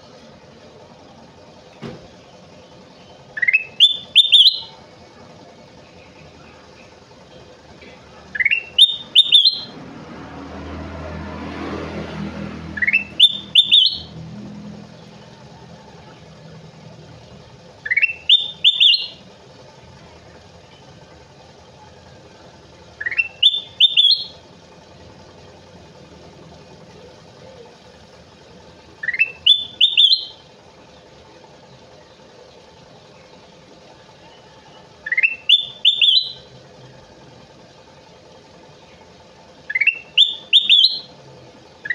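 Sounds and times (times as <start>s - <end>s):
bird singing whistled notes: 3.1s - 4.8s, 8.3s - 9.8s, 12.7s - 14.2s, 17.8s - 19.2s, 23.0s - 24.4s, 29.0s - 30.4s, 34.7s - 36.5s, 39.7s - 41.1s.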